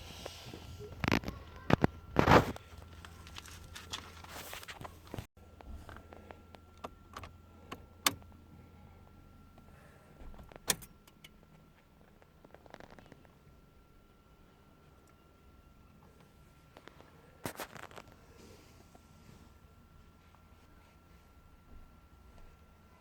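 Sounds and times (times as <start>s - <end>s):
car engine humming: 0.0s - 16.7s.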